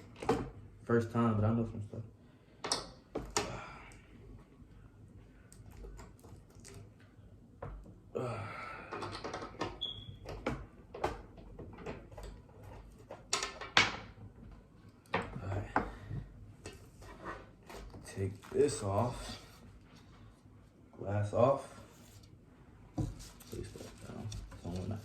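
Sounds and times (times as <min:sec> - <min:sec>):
brief squeak: 0:09.8 - 0:10.2.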